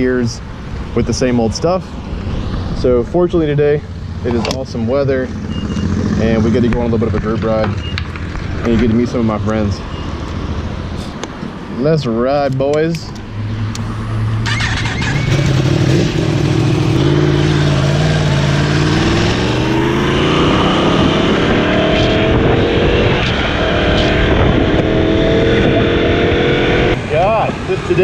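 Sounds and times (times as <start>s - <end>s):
motorcycle engine accelerating: 3.9s - 9.3s, 13.6s - 27.7s
wind rushing over microphone: 15.6s - 28.0s.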